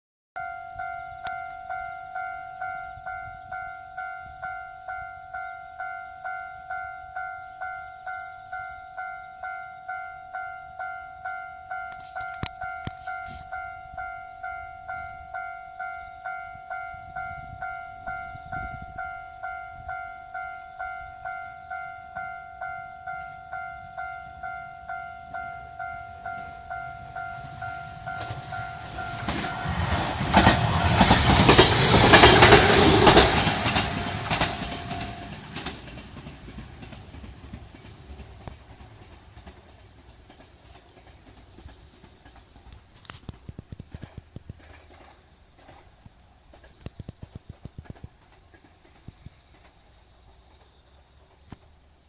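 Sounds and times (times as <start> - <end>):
level crossing bell ringing: 0.4 - 29.7
train wheels clacking: 23.1 - 49.8.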